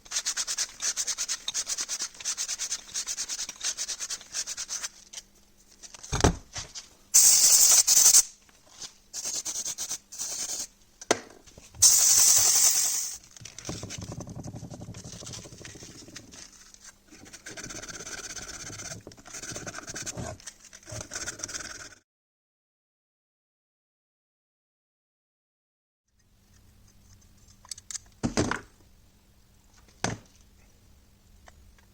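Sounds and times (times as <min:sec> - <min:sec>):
loud hissing bursts: 0:07.2 - 0:08.4, 0:09.2 - 0:10.7, 0:11.8 - 0:13.2
scraping and rubbing: 0:13.4 - 0:22.0.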